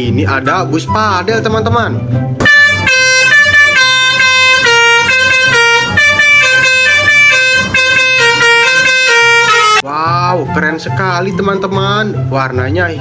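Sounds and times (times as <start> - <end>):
musical bus horn tune: 2.4 - 9.8.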